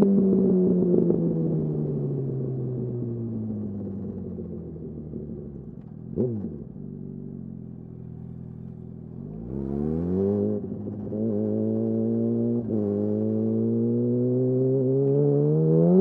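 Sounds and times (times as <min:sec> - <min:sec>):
motorcycle engine revving: 0:05.5 - 0:16.0.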